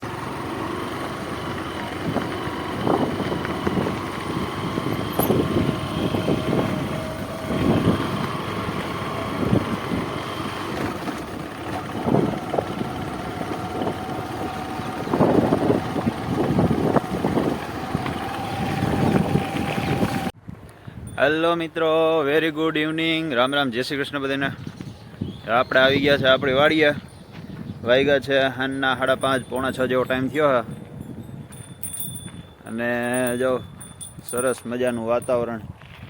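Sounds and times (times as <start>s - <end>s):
vehicle engine running: 0.0s - 20.4s, 27.0s - 34.7s
wind gusting on microphone: 1.9s - 21.3s, 24.4s - 36.0s.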